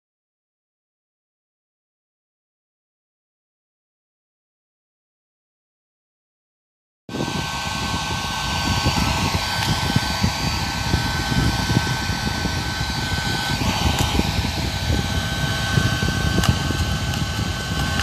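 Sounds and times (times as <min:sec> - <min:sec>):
hair dryer blowing: 0:07.1 - 0:18.0.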